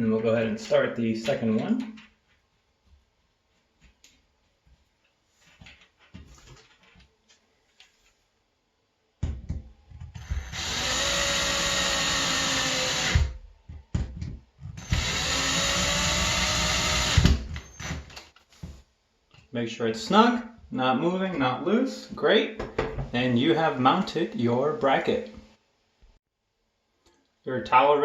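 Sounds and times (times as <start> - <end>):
power drill driving screws: 10.2 - 13.4, 14.8 - 18.2.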